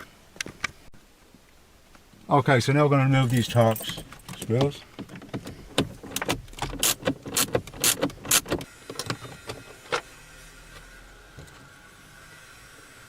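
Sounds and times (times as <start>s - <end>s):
screwdriver clicking on screws: 6.7s - 9.2s.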